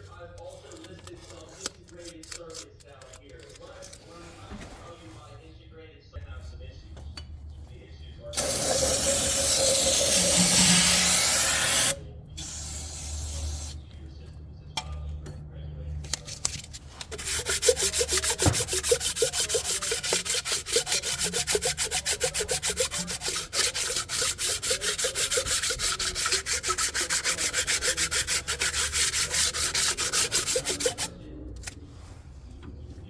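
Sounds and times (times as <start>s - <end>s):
fast back-and-forth scrubbing: 8.4s - 12.0s, 17.1s - 31.2s.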